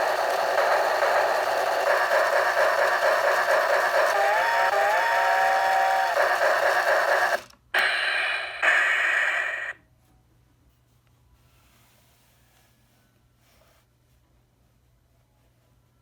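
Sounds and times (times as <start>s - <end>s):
alarm clock steam hissing: 0.0s - 9.8s.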